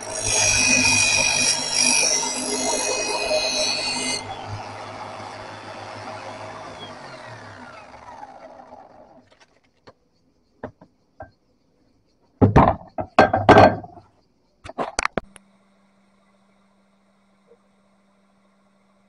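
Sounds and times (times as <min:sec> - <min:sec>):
power tool motor winding down: 0:00.0 - 0:09.5
knocking and clattering: 0:12.4 - 0:14.0.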